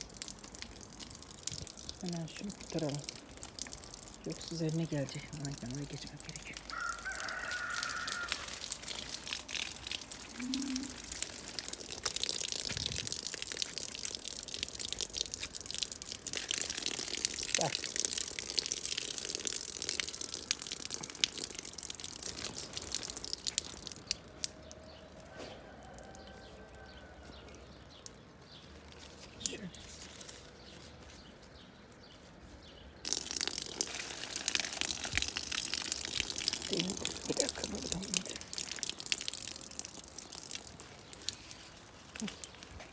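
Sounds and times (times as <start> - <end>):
steady rain hiss: 0.0 - 23.9, 33.0 - 42.9
raindrops striking close: 0.0 - 32.1, 32.9 - 42.9
faint bird chirps: 10.3 - 11.0.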